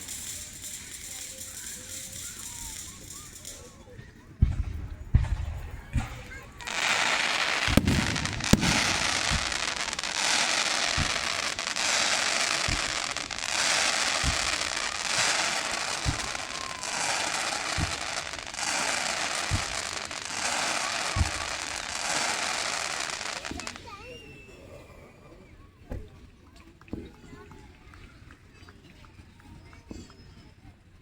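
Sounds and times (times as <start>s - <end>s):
fireworks crackling hiss: 0.0s - 3.9s, 4.5s - 24.3s
fireworks low boom: 4.4s - 23.8s.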